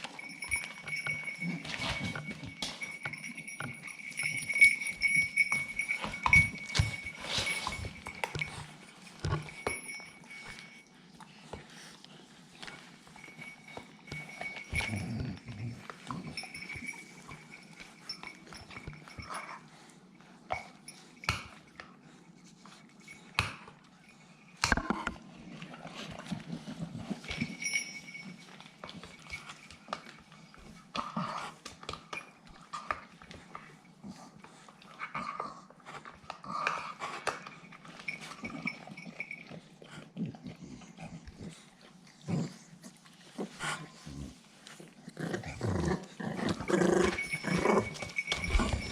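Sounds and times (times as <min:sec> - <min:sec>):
puppies growling and yapping: 0:38.3 - 0:48.9
sharp knocks and scuffling: 0:47.2 - 0:48.9.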